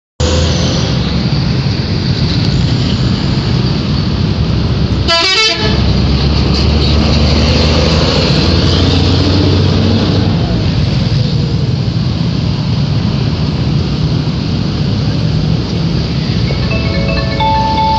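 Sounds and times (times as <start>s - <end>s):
bus engine: 0.2s - 17.9s
multi-tone bus horn: 5.0s - 5.9s.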